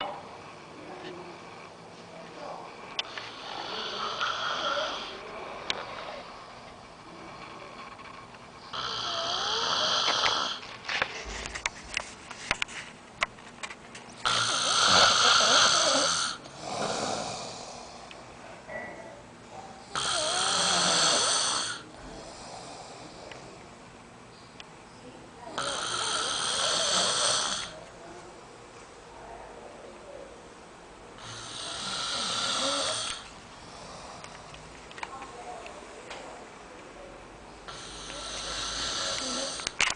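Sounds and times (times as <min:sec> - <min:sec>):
quiet breathing: 0:00.3 - 0:12.6, 0:14.2 - 0:28.2, 0:31.2 - 0:36.4, 0:37.4 - 0:39.8
man snoring: 0:03.1 - 0:06.0, 0:08.7 - 0:10.6, 0:14.2 - 0:18.0, 0:19.9 - 0:23.2, 0:25.6 - 0:27.8, 0:31.2 - 0:34.2, 0:37.7 - 0:39.8.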